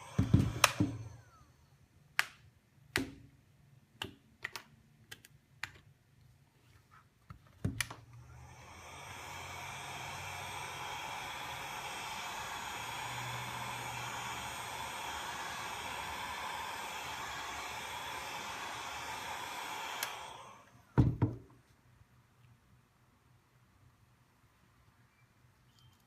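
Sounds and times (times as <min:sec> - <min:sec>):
hot-air tool blowing: 0:00.0 - 0:01.7, 0:08.1 - 0:21.2.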